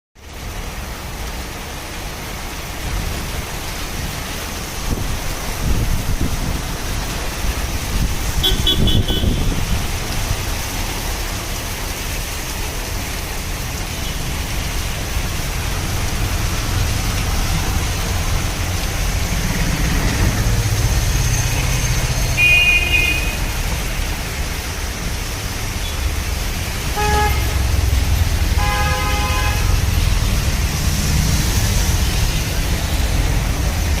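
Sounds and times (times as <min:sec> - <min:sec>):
road traffic rumble: 0:00.2 - 0:34.0
steady rain: 0:00.2 - 0:34.0
car horns honking: 0:08.4 - 0:09.6, 0:22.4 - 0:23.6, 0:26.9 - 0:27.7, 0:28.6 - 0:29.8.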